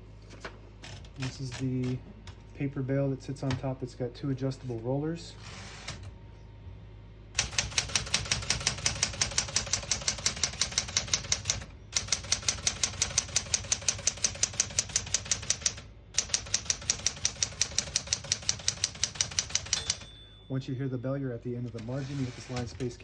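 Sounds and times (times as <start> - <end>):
typewriter key strikes: 7.4 - 20.2.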